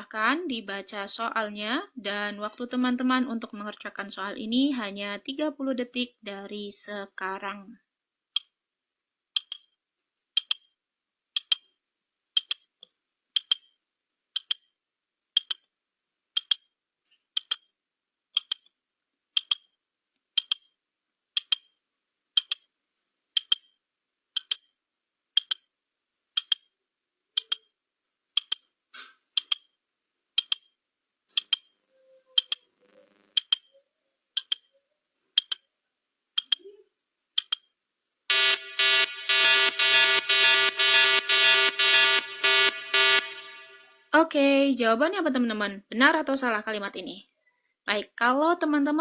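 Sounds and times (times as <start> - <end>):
clock ticking: 8.4 - 8.6, 9.4 - 9.7, 10.4 - 10.7, 11.4 - 11.8, 12.4 - 12.7, 13.4 - 13.8, 14.4 - 14.7, 15.4 - 15.7, 16.4 - 16.7, 17.4 - 17.7, 18.4 - 18.7, 19.4 - 19.7, 20.4 - 20.8, 21.4 - 21.8, 22.4 - 22.7, 23.4 - 23.8, 24.4 - 24.7, 25.4 - 25.7, 26.4 - 26.7, 27.4 - 27.7, 28.4 - 28.7, 29.4 - 29.8, 30.4 - 30.8, 31.4 - 32.7, 33.4 - 33.8, 34.4 - 34.7, 35.4 - 35.7, 36.4 - 36.7, 37.4 - 37.7.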